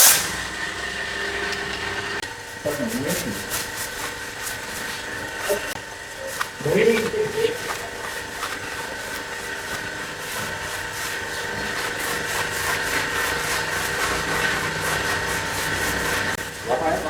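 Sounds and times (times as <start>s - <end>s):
hiss: 0.0s - 0.5s
machine whining: 0.0s - 17.0s.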